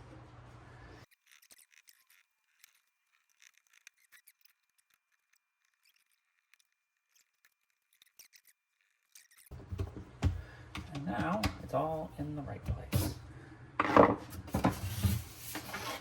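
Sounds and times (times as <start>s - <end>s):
small screws clicking and scraping: 1.0s - 9.5s.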